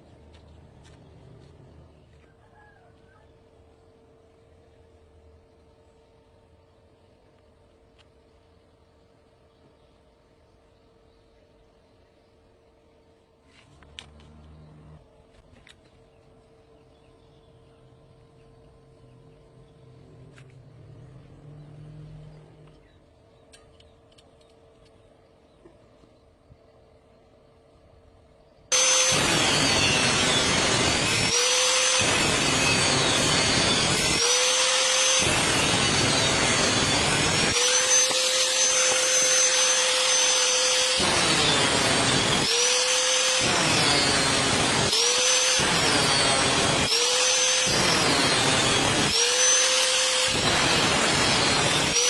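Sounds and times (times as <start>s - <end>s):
angle grinder grinding metal: 28.7s - 52.0s.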